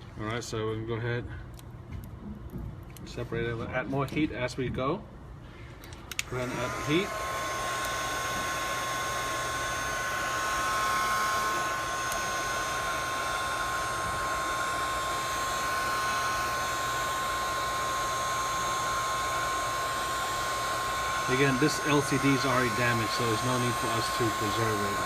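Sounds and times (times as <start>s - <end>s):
hot-air blower whining: 5.3s - 25.0s.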